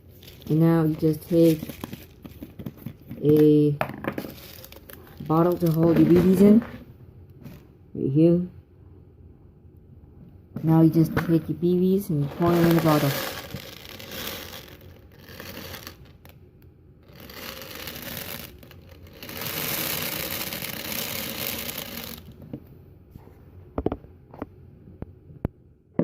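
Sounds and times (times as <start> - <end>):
plastic pellets poured into bottle: 12.3 - 16.2, 17.0 - 22.4.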